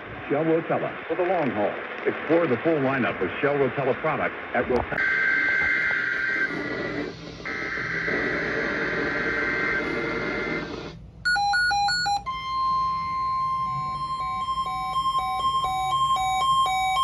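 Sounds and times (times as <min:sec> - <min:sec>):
radio static: 0:00.0 - 0:11.0
long steady alert tone: 0:11.2 - 0:17.0.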